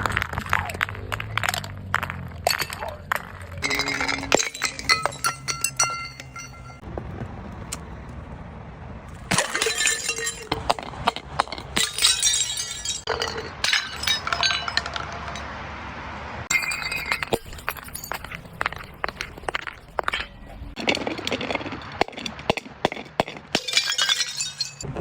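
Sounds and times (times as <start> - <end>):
glass bottles breaking: 0.4 - 6.8, 9.3 - 15.5, 16.5 - 24.9
glass shards clinking: 3.6 - 6.8, 9.3 - 15.5, 16.5 - 24.8.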